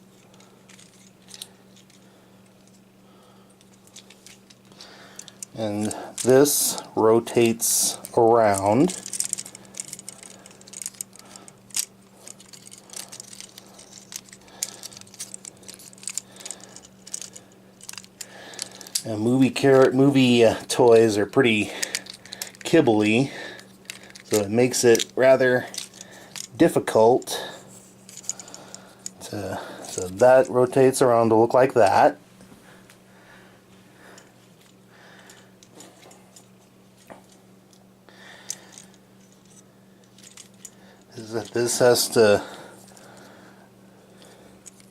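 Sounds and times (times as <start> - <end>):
steady low hum: 0.0 - 44.9
soft handling rustles: 3.5 - 43.5
plastic toy parts clicking: 3.8 - 6.3, 8.0 - 19.0, 21.8 - 22.7, 23.8 - 25.1, 25.7 - 26.5, 40.2 - 40.8
plastic toy joints clicking: 11.7 - 19.0.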